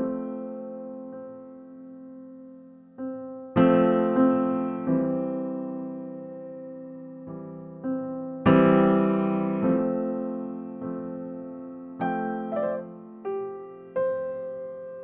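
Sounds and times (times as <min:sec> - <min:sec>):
slow soft piano: 0:00.0 - 0:15.0.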